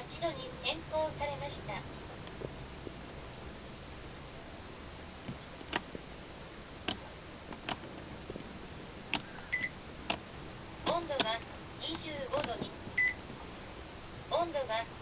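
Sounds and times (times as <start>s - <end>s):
remote control buttons clicking: 5.3s - 5.9s, 10.8s - 13.4s
air conditioner short high beep: 9.5s - 9.8s, 13.0s - 13.2s.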